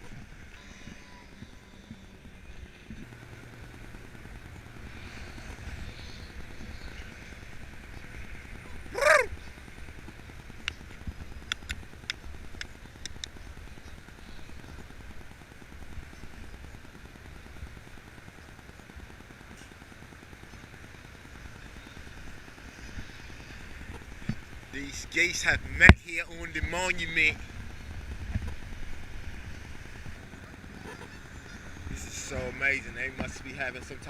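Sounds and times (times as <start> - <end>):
steady low rumble: 0.0 - 34.0
sharp clicks: 10.6 - 13.4
goose honk: 30.8 - 31.7.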